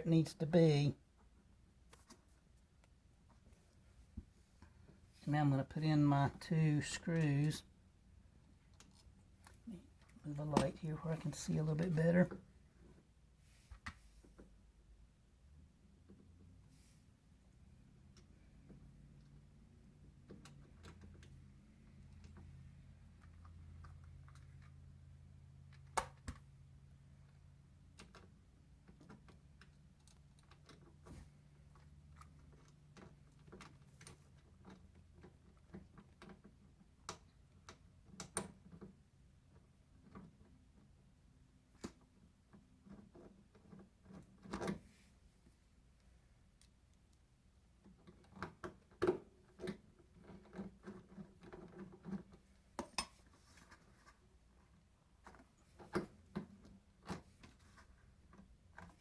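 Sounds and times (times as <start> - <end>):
low steady hum: 0.0 - 34.2.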